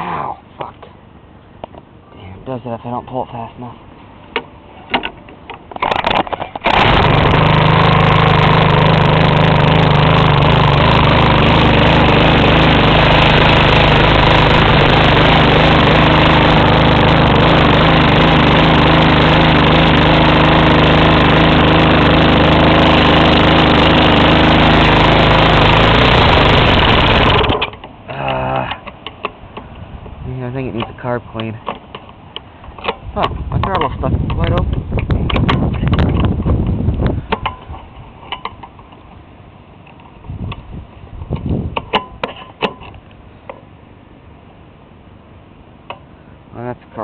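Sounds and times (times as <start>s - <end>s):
lawnmower engine running: 5.7s - 28.0s
recoil cord tugs: 5.8s - 27.8s.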